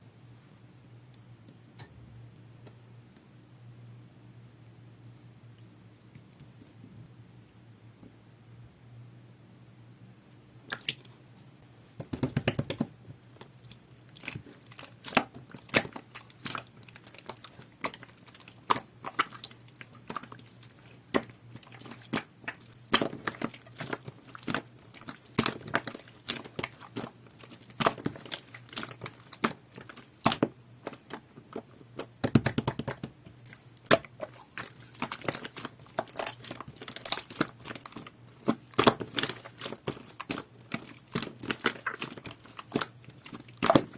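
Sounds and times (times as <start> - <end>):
slime squishing with sticky clicks: 10.7 - 11.2, 12.0 - 43.9.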